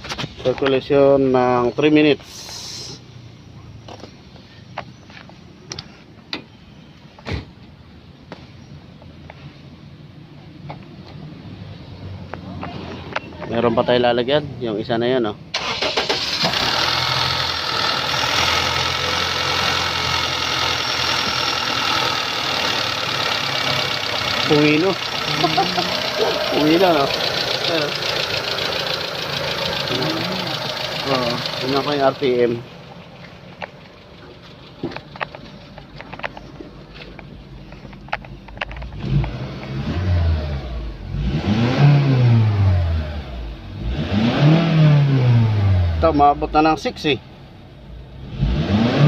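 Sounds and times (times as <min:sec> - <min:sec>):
car engine idling: 0:15.5 - 0:39.0.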